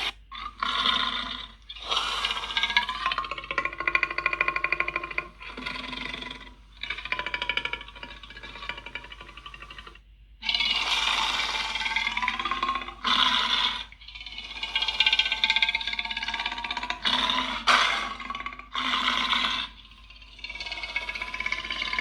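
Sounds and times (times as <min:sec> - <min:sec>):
monster roars: 0:17.6 - 0:19.7.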